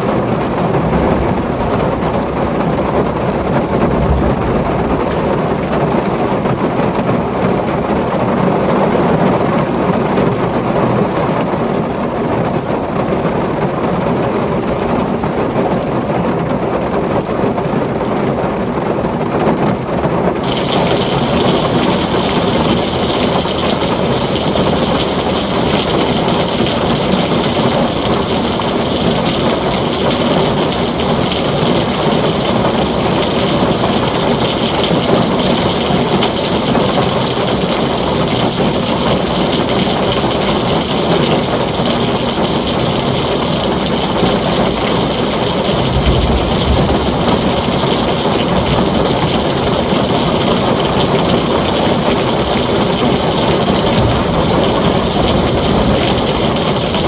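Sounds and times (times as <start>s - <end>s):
hissy rain: 0.0s - 12.5s, 20.4s - 57.0s
heavy rain on a tin roof: 0.0s - 57.0s
low rumble of thunder: 0.4s - 6.9s, 20.4s - 57.0s.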